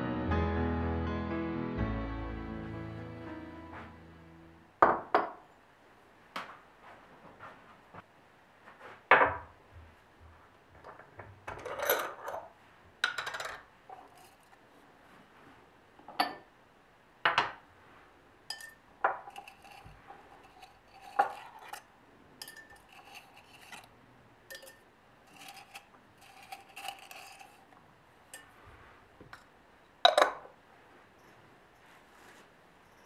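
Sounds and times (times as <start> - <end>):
small hard objects clinking: 24.5 - 27.7.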